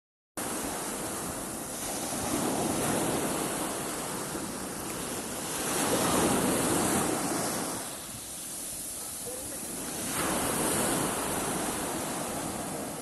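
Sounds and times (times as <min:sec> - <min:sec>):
sea waves washing onto beach: 0:00.4 - 0:13.0.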